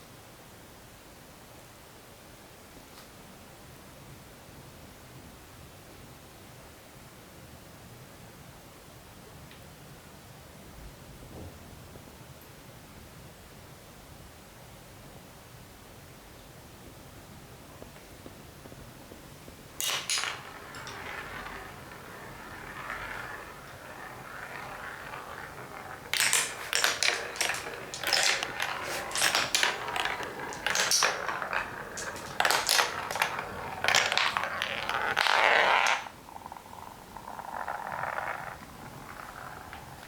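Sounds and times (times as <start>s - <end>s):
glass marbles rolling: 19.8s - 40.0s
marbles clacking: 19.8s - 40.0s.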